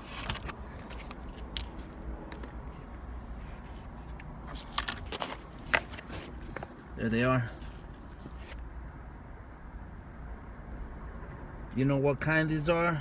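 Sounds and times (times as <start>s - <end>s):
hands clicking and scraping parts: 0.0s - 8.6s.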